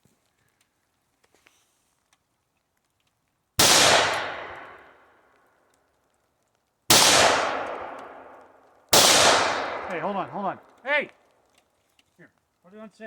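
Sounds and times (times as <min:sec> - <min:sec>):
rifle shots: 0:03.6 - 0:04.9, 0:06.9 - 0:10.5.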